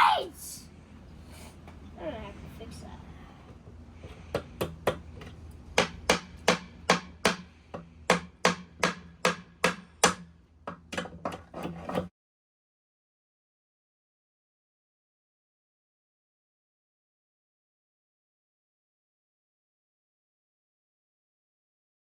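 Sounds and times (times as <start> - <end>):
hammer driving nails into wood: 4.3 - 11.8.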